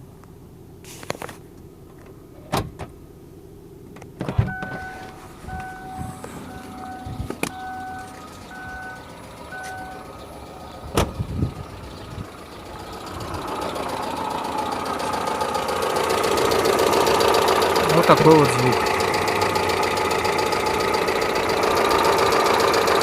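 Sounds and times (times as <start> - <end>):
car engine idling: 0.0 - 23.0
engine clicks and knocks: 3.9 - 23.0
two-tone warning chime: 4.5 - 10.1.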